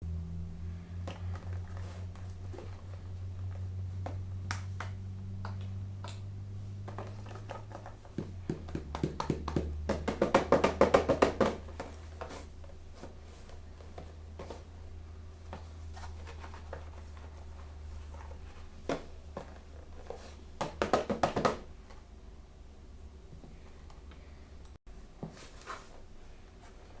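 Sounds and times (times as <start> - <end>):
faint low hum: 0.0 - 10.2.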